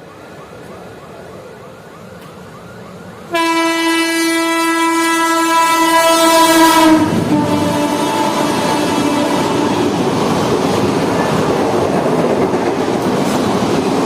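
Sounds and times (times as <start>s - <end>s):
locomotive horn blast: 3.3s - 10.0s.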